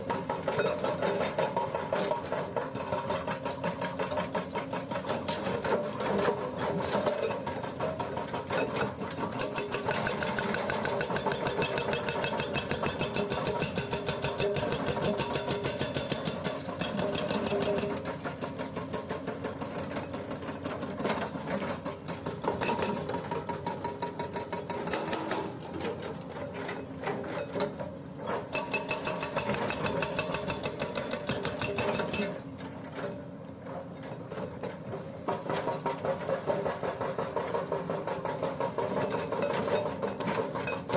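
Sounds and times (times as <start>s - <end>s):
hydraulic breaker hammering: 9.3s - 17.9s, 28.5s - 32.3s.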